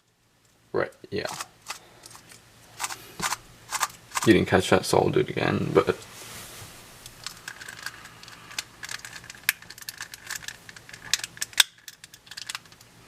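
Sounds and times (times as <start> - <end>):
plastic puzzle cube clicks and taps: 7.5 - 12.9.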